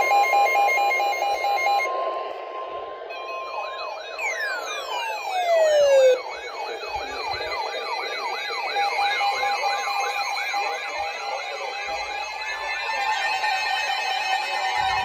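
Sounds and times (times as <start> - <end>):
high wavering siren tone: 0.0 - 13.2
siren tone sliding down: 3.1 - 8.2
fast yelping siren wail: 3.2 - 8.2.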